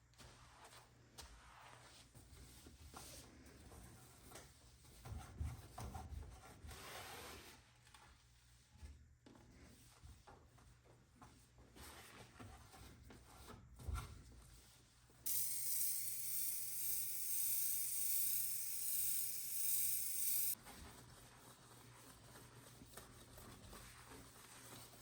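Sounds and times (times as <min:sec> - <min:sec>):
aerosol spray hissing: 0:15.3 - 0:20.6.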